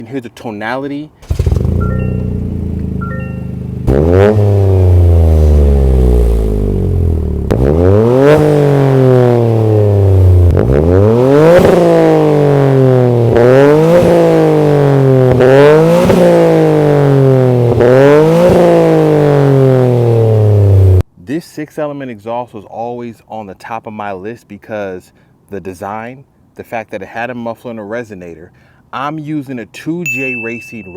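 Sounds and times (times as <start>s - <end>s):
car engine revving: 1.2s - 21.0s.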